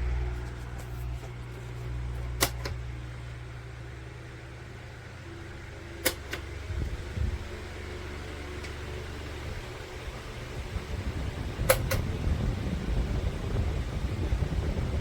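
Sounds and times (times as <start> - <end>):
electric fan humming: 0.0 - 15.0
sharp clicks: 6.0 - 6.5.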